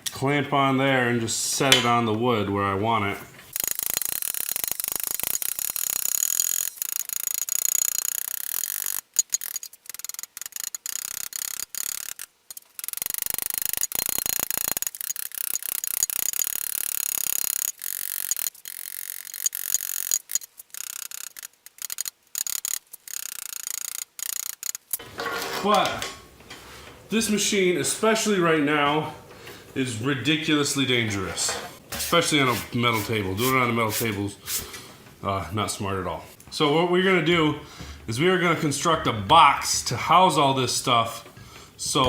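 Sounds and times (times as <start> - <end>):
electric arc sizzling and crackling: 3.5 - 25.8.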